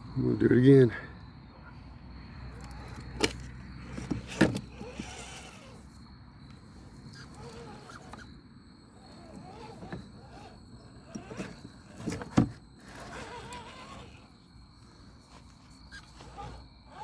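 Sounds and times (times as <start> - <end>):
electric motor whirring: 2.6 - 5.9, 9.0 - 14.3, 16.0 - 17.0.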